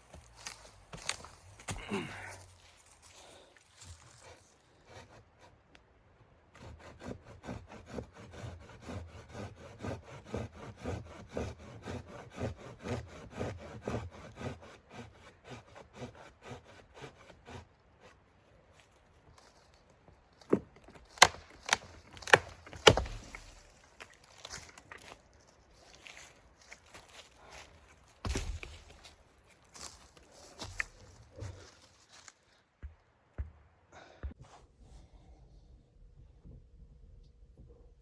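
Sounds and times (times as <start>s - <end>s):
hand saw cutting wood: 4.2s - 5.6s, 6.5s - 18.2s, 20.5s - 23.8s
sharp wooden knocks: 20.5s - 23.5s.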